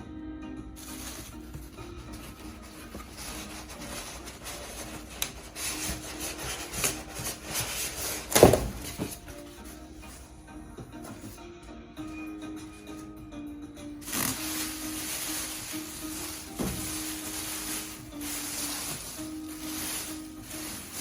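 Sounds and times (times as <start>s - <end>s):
background music: 0.0s - 21.0s
packaging being handled and scraped: 0.8s - 10.3s, 14.0s - 21.0s.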